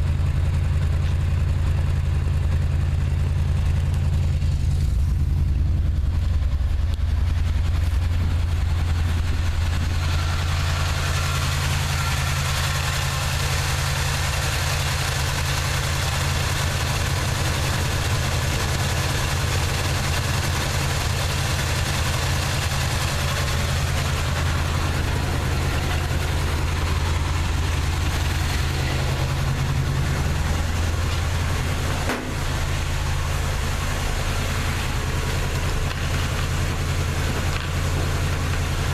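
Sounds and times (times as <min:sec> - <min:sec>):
truck engine misfiring: 0:00.0 - 0:38.9.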